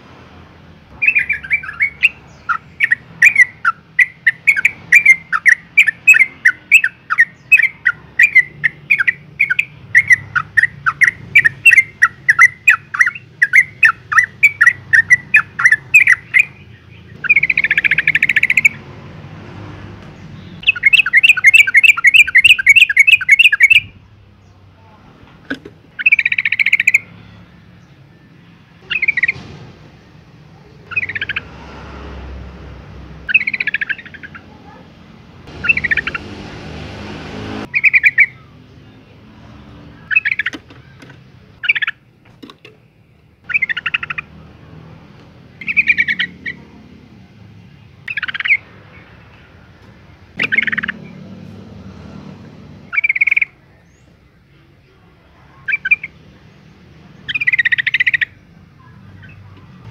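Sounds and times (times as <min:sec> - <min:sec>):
bird bubbling calls: 0:35.6 - 0:36.2, 0:50.4 - 0:51.0.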